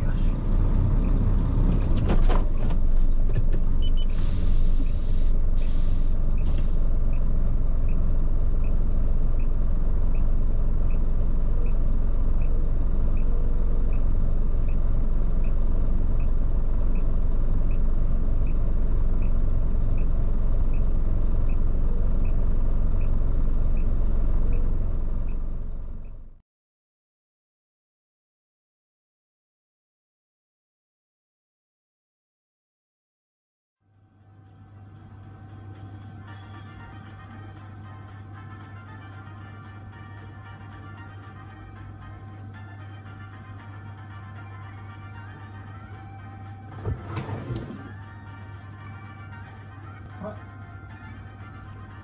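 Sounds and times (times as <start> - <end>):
truck engine rumble: 0.0 - 26.4, 34.2 - 52.0
short hisses: 4.1 - 6.2.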